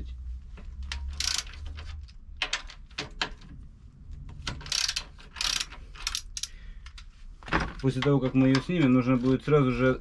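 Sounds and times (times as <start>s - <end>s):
ratchet wrench clicking: 0.9s - 2.1s, 4.6s - 6.6s.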